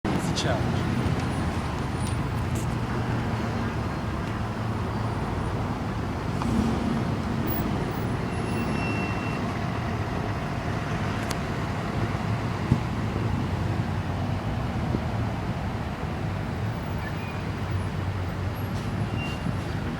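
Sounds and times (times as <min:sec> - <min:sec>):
vehicle and road noise: 0:00.0 - 0:19.9.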